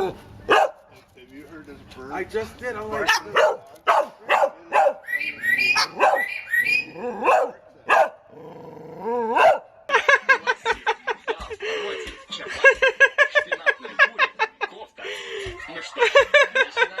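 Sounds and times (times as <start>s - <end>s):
parrot imitating dog barks: 3.0s - 8.2s
parrot rising call: 5.1s - 7.2s.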